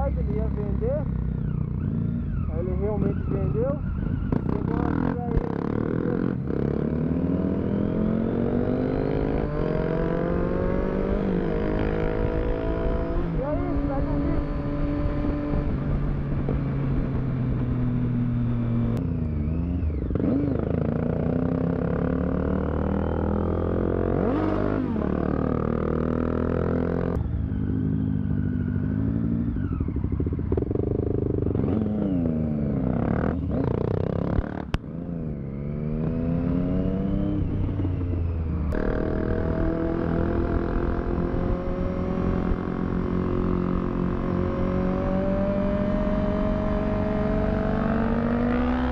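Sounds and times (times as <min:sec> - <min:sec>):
motorcycle engine accelerating: 0:00.0 - 0:48.9
wind noise: 0:08.6 - 0:18.9.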